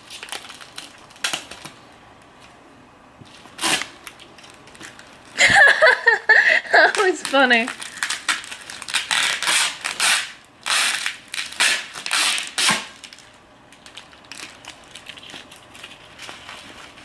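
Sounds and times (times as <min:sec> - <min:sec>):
packaging crinkling: 0:00.0 - 0:02.6, 0:03.3 - 0:05.9, 0:06.7 - 0:17.0
rustling and handling: 0:13.0 - 0:17.0.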